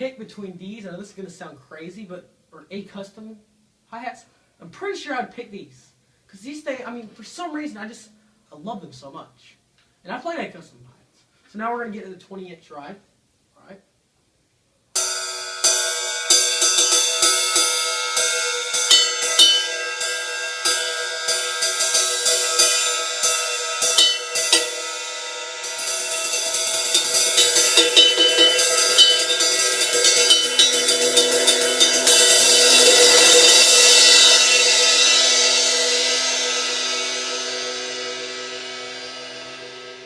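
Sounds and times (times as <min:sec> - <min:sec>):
ride cymbal struck with stick: 0:15.0 - 0:40.0.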